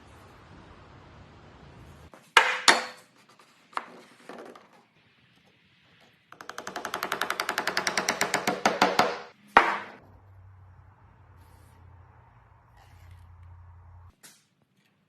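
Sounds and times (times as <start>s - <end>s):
wooden parts knocking together: 6.4s - 10.0s.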